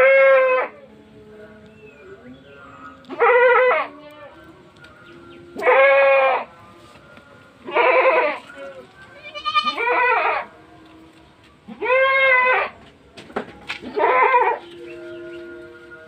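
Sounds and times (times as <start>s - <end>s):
goats bleating: 0.0s - 0.8s, 3.1s - 4.4s, 5.6s - 6.5s, 7.6s - 10.6s, 11.7s - 12.8s, 13.8s - 15.4s.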